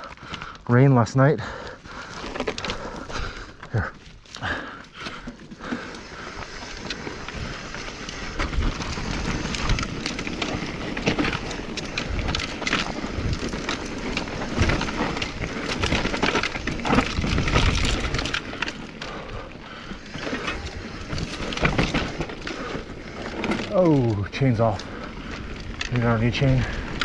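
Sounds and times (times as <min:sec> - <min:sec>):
bike rattling and knocking: 0:00.0 - 0:27.0
bike rolling over loose dirt: 0:00.0 - 0:27.0
wind rumbling on microphone: 0:05.7 - 0:27.0.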